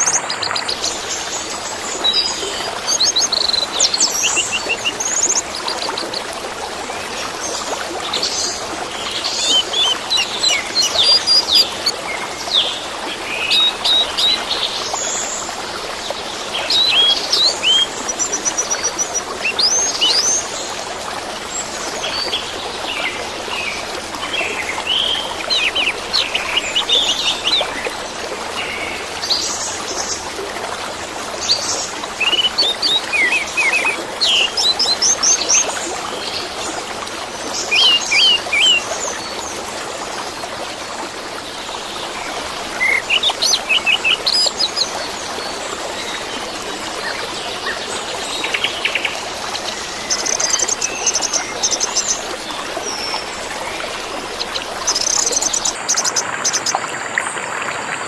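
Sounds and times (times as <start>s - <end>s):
running water: 0.0s - 58.0s
bird chirping: 42.8s - 44.9s.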